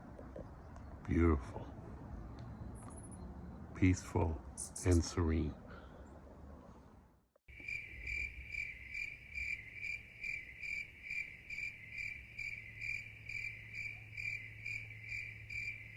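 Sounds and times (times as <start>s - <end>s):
cricket chirping: 4.6s - 5.0s, 7.5s - 15.9s.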